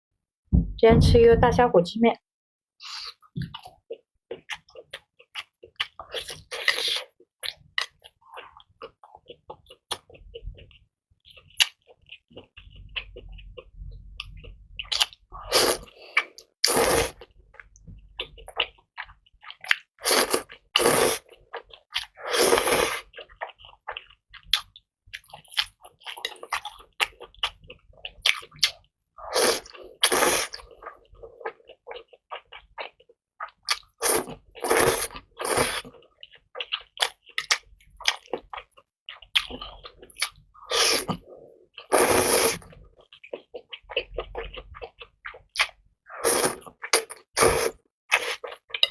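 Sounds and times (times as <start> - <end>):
wet chewing and smacking: 2.8 - 48.9
noodle slurping: 15.4 - 17.2, 20.0 - 21.4, 22.0 - 23.1, 29.2 - 31.0, 33.7 - 36.0, 40.7 - 42.8, 46.2 - 48.9.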